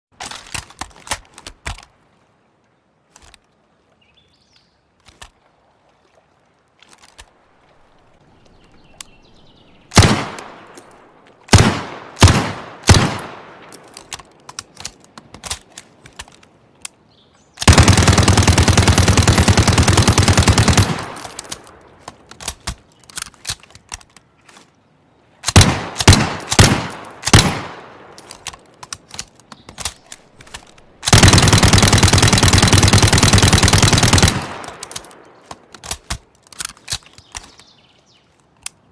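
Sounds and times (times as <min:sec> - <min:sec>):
faint clicks: 0:08.4 - 0:09.2, 0:21.1 - 0:24.8, 0:34.5 - 0:38.9
submachine gun firing: 0:10.0 - 0:10.4, 0:11.5 - 0:13.4, 0:17.6 - 0:21.6, 0:25.5 - 0:27.9, 0:31.0 - 0:35.1.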